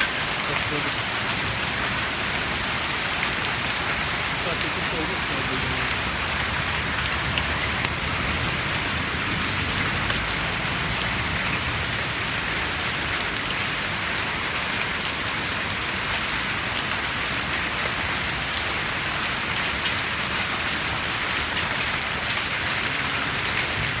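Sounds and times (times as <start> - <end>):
heavy rain hissing: 0.0 - 24.0
raindrops pattering close by: 0.0 - 24.0.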